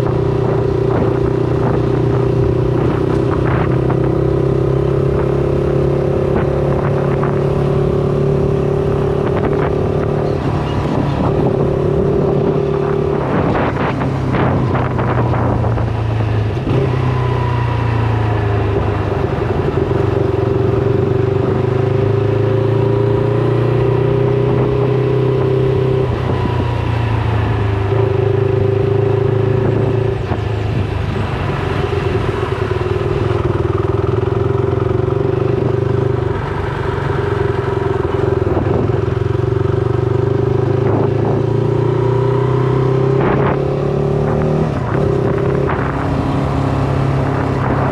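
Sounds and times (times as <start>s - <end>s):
motorcycle engine running: 0.0s - 22.8s.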